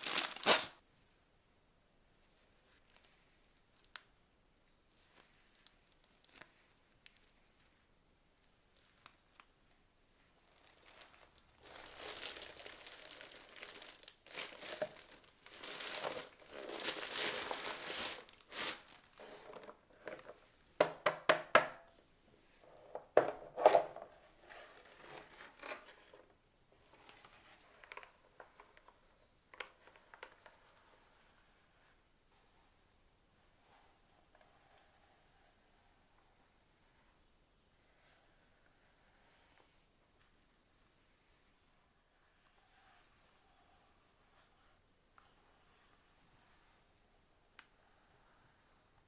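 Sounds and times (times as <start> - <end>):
packaging crinkling and tearing: 0.0 - 0.8, 10.5 - 19.6.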